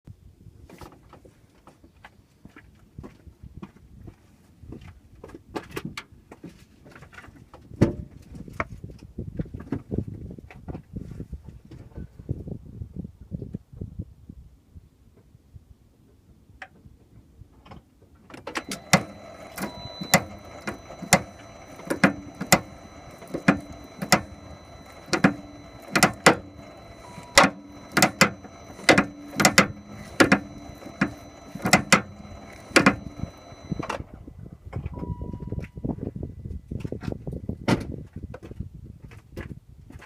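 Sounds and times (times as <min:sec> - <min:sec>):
steering clicking: 0:18.5 - 0:33.9.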